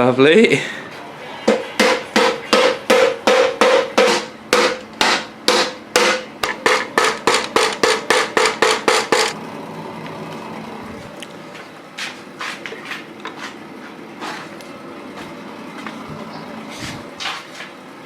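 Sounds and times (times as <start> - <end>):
hammer knocking metal: 1.4 - 9.4.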